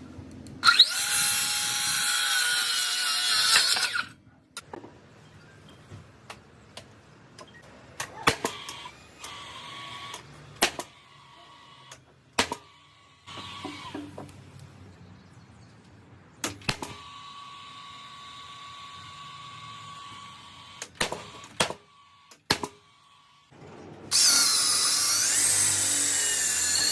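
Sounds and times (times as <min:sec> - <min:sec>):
steady tool whine: 0:00.6 - 0:04.2, 0:24.1 - 0:26.9.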